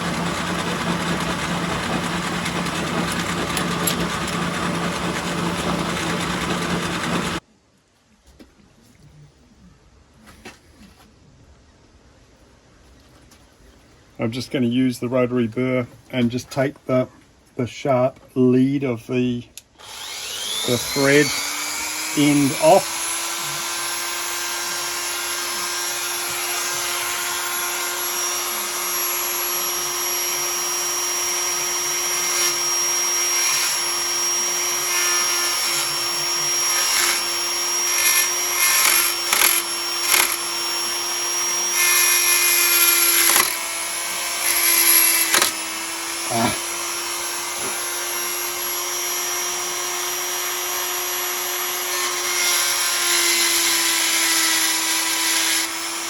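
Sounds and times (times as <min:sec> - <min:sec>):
burr grinding metal: 0:00.0 - 0:07.4, 0:19.8 - 0:50.1
rotary tool whining: 0:00.0 - 0:07.4, 0:19.8 - 0:56.0.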